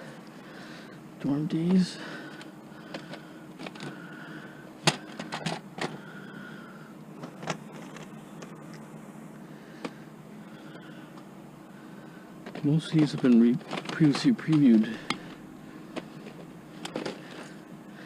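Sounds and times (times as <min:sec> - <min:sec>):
plastic cassettes clacking: 0:02.3 - 0:04.0, 0:04.8 - 0:06.0, 0:07.2 - 0:08.5, 0:12.4 - 0:17.5.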